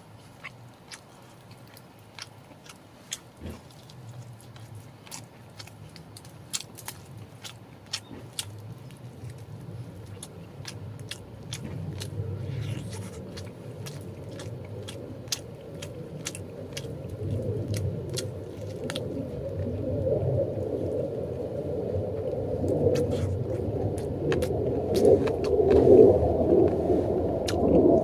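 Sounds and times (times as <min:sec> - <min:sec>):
chewing and biting food: 0:00.0 - 0:19.8, 0:22.2 - 0:26.8, 0:27.4 - 0:28.0
low rumble: 0:08.3 - 0:28.0.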